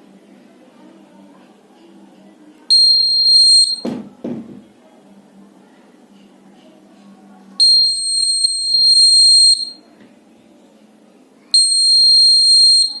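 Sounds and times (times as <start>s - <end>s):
high-pitched alarm buzzer: 11.6s - 13.0s.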